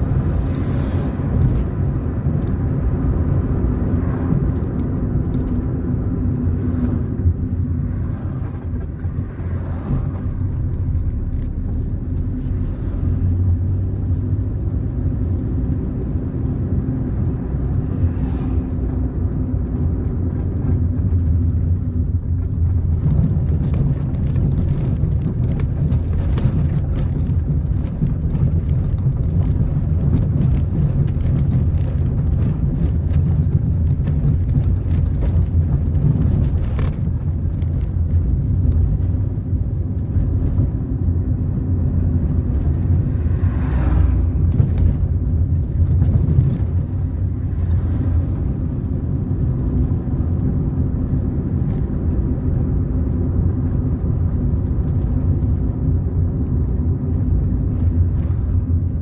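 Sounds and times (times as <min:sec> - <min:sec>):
car engine and road rumble: 0:00.0 - 0:59.0
small clicks and rattles: 0:19.3 - 0:40.7.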